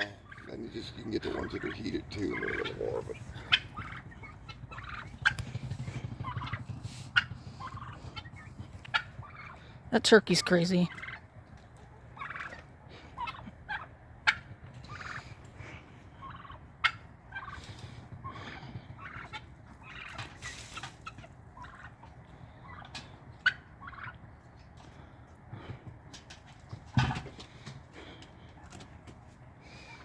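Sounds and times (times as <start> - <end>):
short poultry calls: 0.0 - 5.4, 12.0 - 15.5, 16.1 - 24.3
turkey gobbling: 0.0 - 9.9, 10.8 - 30.0.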